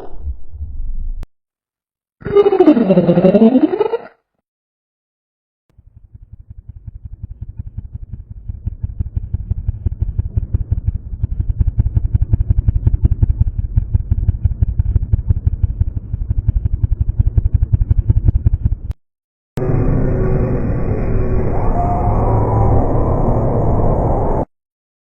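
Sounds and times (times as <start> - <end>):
low pulsing rumble: 5.8 - 19.0, 19.6 - 24.5
steady sound: 19.6 - 24.5.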